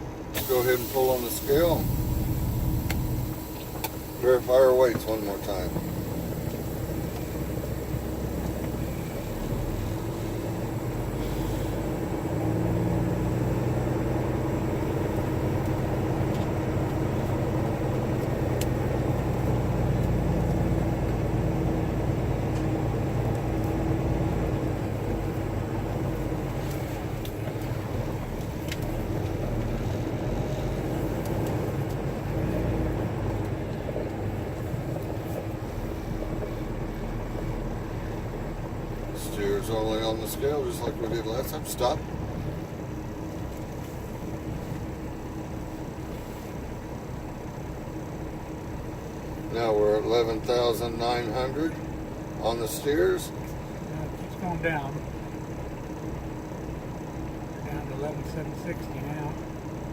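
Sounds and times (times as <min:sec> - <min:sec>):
diesel truck engine: 0:00.0 - 0:59.9.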